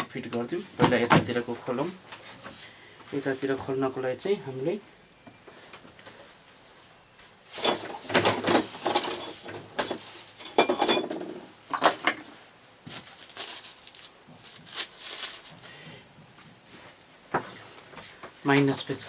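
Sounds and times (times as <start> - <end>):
tools clattering on workbench: 7.5 - 12.3.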